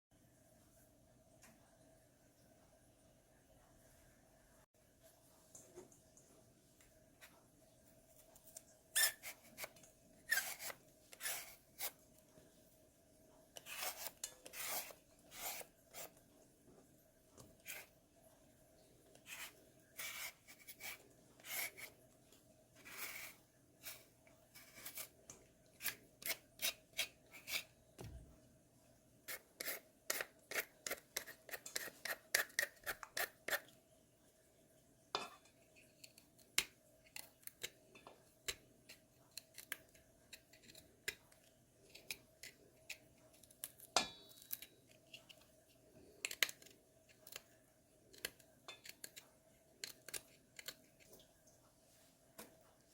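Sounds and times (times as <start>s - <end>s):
faint steady hum: 0.1s - 52.9s
knife cutting radish: 9.0s - 12.0s, 13.6s - 16.1s, 19.2s - 22.0s, 22.8s - 25.2s, 25.8s - 27.7s, 29.3s - 33.6s.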